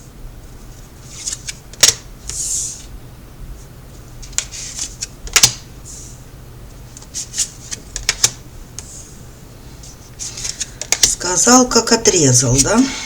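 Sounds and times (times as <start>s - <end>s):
cards sliding: 1.1s - 2.9s, 9.8s - 11.1s
cards snapping and tapping: 1.4s - 2.0s, 4.3s - 5.7s, 7.7s - 8.4s, 10.3s - 11.1s.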